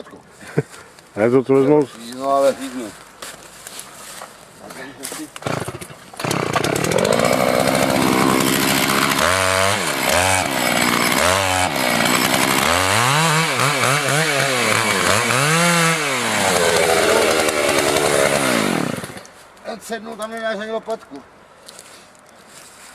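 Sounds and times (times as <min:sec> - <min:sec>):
two-stroke chainsaw running: 0:05.4 - 0:19.2.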